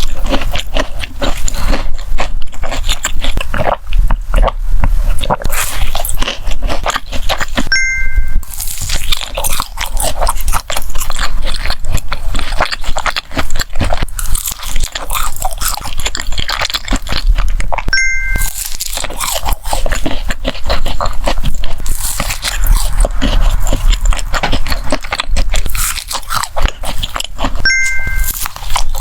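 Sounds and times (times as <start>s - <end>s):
crunchy chewing: 0.0s - 7.8s, 8.4s - 29.0s
two-note ding: 7.7s - 8.4s, 17.9s - 18.6s, 27.6s - 28.4s.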